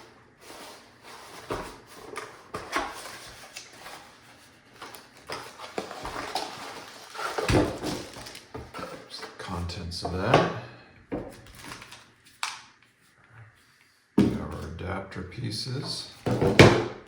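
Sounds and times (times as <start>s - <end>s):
packaging rustling: 0.5s - 9.3s, 11.3s - 12.6s.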